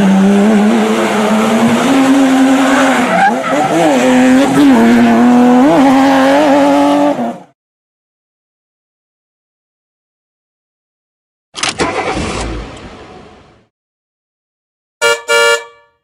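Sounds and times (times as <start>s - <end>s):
racing car engine at high revs: 0.0s - 7.6s.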